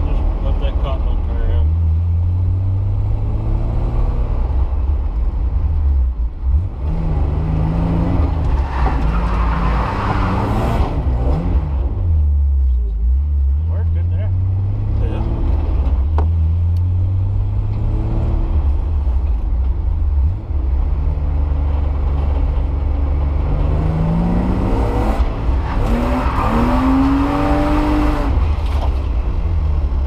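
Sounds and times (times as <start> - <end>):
car engine revving: 6.4 - 30.0.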